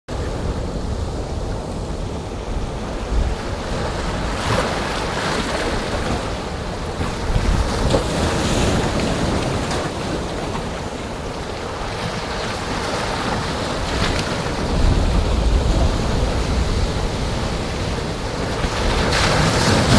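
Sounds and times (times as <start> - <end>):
waves breaking: 0.1 - 19.9
wind buffeting the microphone: 0.1 - 19.9.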